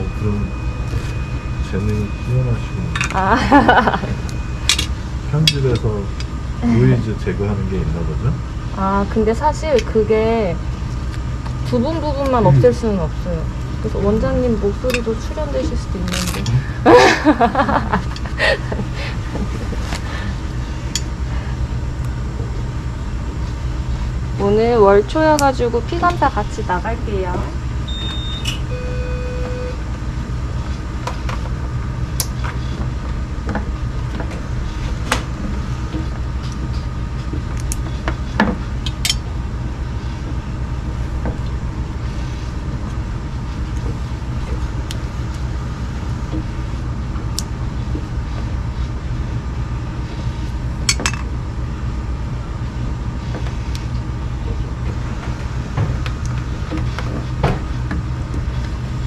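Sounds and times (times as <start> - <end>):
low hum of machines: 0.0 - 59.0
short electronic beep: 27.9 - 29.8.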